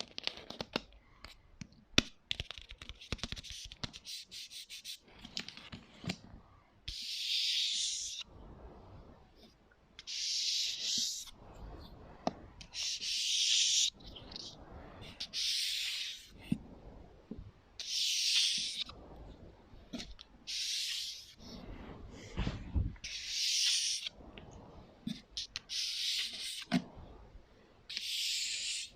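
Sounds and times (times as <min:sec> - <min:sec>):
soft hissing bursts: 0:06.4 - 0:28.9.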